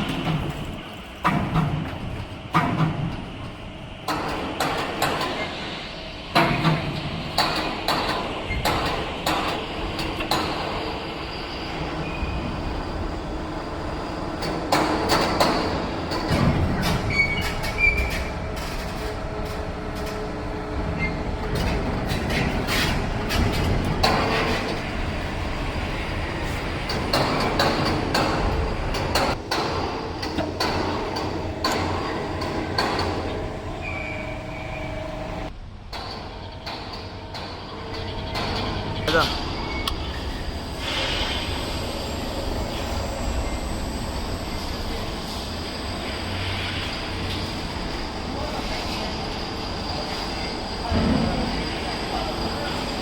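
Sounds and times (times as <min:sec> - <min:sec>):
heavy machinery rumbling: 0:00.0 - 0:53.0
machine whine: 0:36.4 - 0:53.0.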